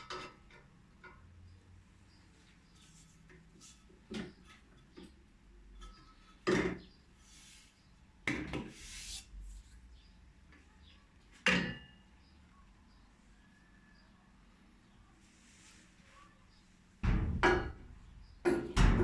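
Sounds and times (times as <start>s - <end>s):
objects knocking and clattering: 5.8s - 6.9s, 17.0s - 19.0s
scraping rattle: 17.0s - 19.0s.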